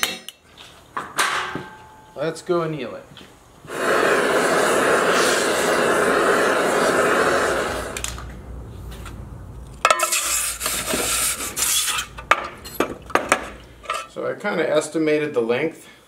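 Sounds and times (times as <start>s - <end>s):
gas torch flame rushing: 3.6s - 9.2s, 10.0s - 13.9s.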